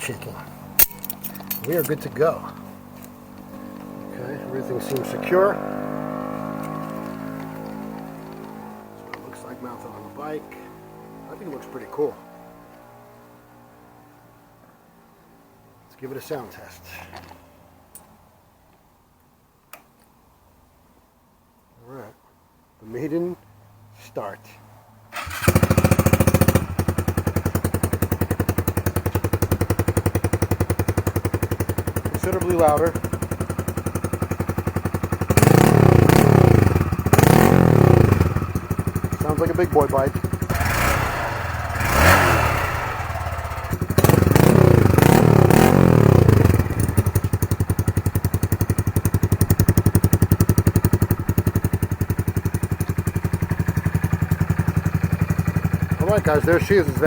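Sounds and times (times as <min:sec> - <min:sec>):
motorcycle engine idling: 0:00.0 - 0:11.5, 0:25.2 - 0:57.0.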